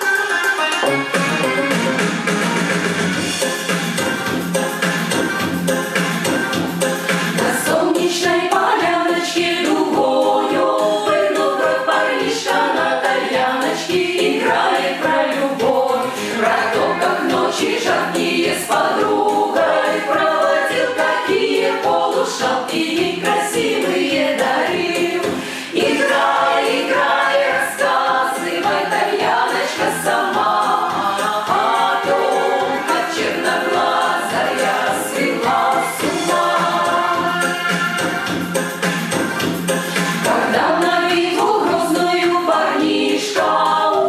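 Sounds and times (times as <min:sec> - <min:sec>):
folk choir singing: 0:07.4 - 0:37.8, 0:40.2 - 0:44.0.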